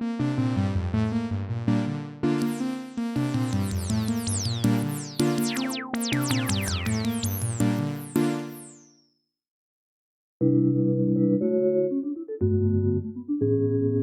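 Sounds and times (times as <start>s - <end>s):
synthesizer chords with sweeps: 0.0s - 9.0s.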